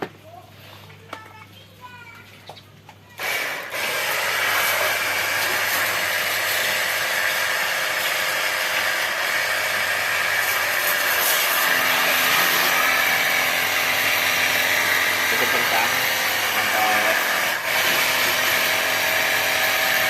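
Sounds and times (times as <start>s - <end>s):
water jet spraying: 3.2s - 18.8s.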